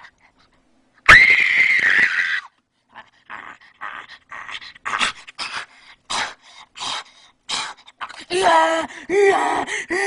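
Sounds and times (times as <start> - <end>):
child panting in breathy huffs: 5.6 - 10.0.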